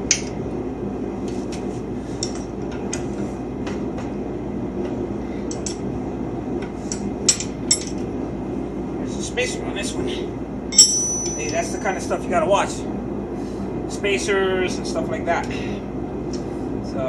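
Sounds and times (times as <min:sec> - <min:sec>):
steady low hum: 0:00.0 - 0:17.0
metallic clinks of tools and bolts: 0:10.7 - 0:11.8.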